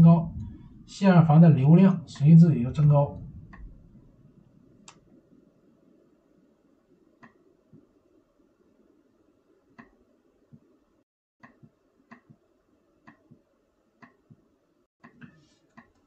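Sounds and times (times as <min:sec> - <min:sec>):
faint sharp clicks: 0:04.8 - 0:05.1, 0:07.2 - 0:07.4.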